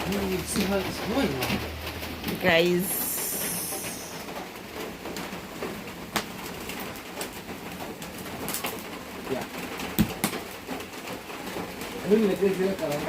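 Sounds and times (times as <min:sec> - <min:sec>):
short high hiss: 0:02.9 - 0:04.4.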